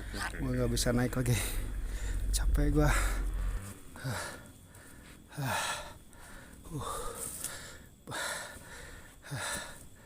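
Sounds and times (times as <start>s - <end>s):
man panting hard: 3.4s - 10.0s.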